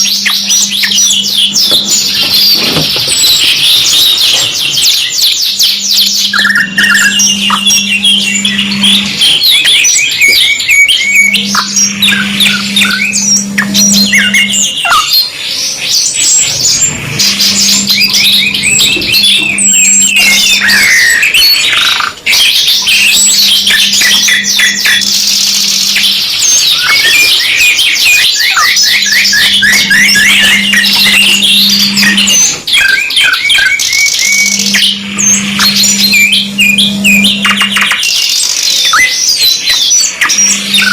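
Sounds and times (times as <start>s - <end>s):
canaries singing trills: 0.0s - 40.9s
low steady hum: 6.1s - 10.1s, 11.0s - 14.7s, 16.4s - 21.0s, 29.4s - 32.6s, 34.4s - 37.9s, 40.2s - 40.9s.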